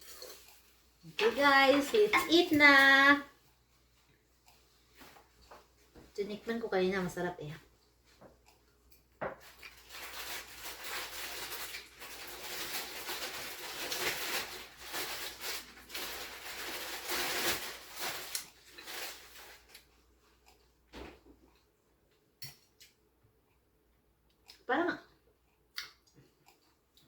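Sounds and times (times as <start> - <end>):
noodles being slurped: 0.0 - 0.8.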